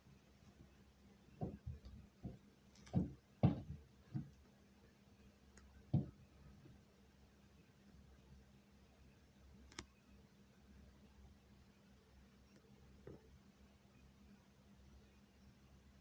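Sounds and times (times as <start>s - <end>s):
faint steady hum: 0.0s - 16.0s
dull thumps through ceiling: 1.4s - 4.5s, 5.8s - 6.4s.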